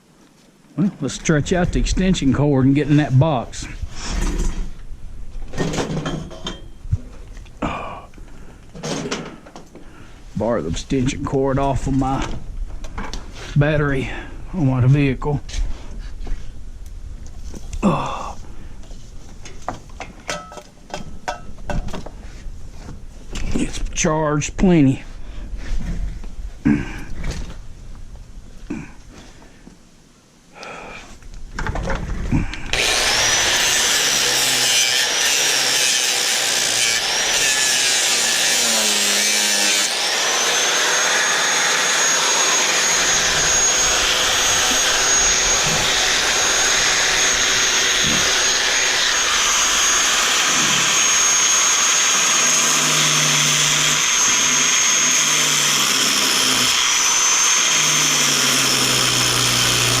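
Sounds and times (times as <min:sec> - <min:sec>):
angle grinder cutting: 0:32.7 - 1:00.0.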